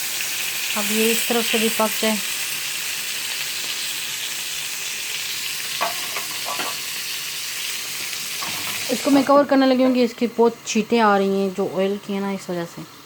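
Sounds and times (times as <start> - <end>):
chicken frying in hot oil: 0.0 - 13.0.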